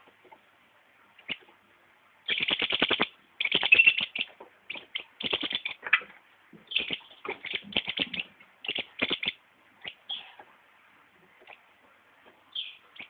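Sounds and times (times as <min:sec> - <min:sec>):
bird ticking song: 0:02.3 - 0:05.8, 0:06.7 - 0:10.4, 0:12.5 - 0:13.0.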